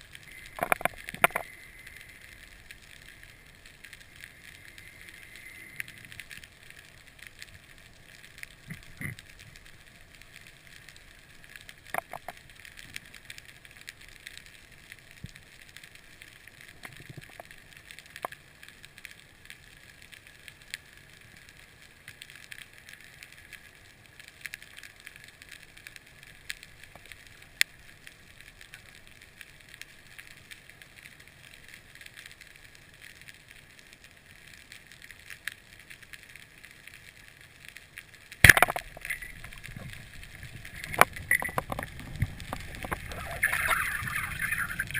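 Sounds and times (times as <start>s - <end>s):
underwater crackle: 0.0s - 44.9s
speargun firing underwater: 38.4s - 39.2s
sharp clicks: 38.4s - 44.9s.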